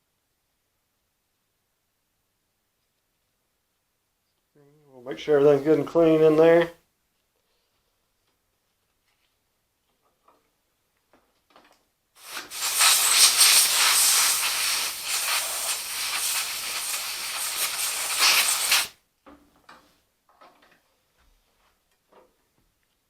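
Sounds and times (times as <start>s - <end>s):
pressurised spray hissing: 12.2s - 18.9s.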